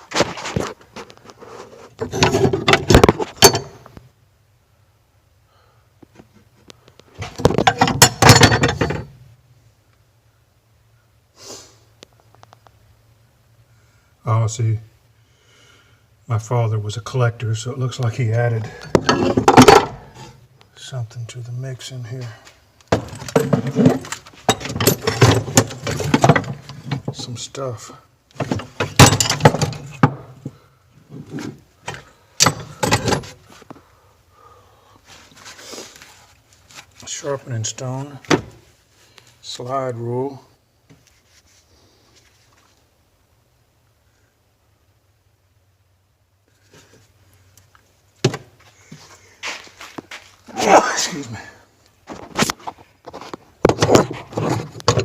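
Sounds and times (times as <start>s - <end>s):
hand tools clinking and rattling: 2.0s - 3.9s, 7.2s - 9.1s, 18.8s - 20.1s, 22.9s - 27.3s, 28.4s - 30.2s.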